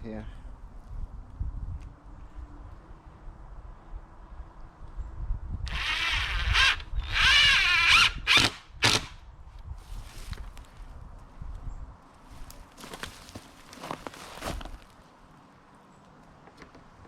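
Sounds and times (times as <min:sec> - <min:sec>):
cordless drill driving screws: 0:05.7 - 0:09.1.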